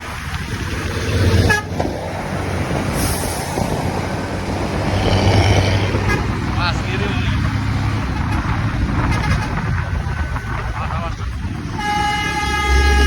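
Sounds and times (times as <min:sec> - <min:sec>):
bus engine running: 0:00.0 - 0:13.0
road noise: 0:00.0 - 0:13.0
bus horn: 0:01.4 - 0:01.8, 0:06.0 - 0:06.4, 0:09.0 - 0:09.8, 0:11.7 - 0:13.0.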